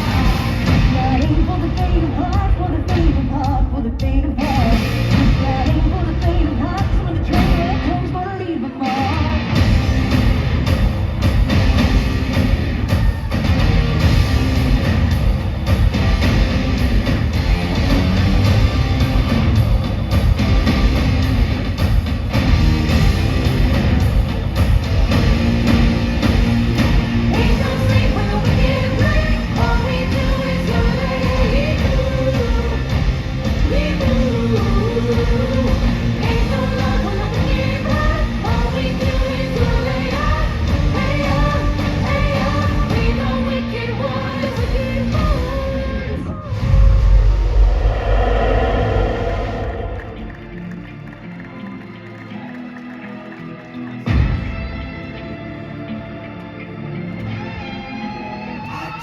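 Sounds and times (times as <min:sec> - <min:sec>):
loud music with driving beat: 0:00.0 - 0:43.5.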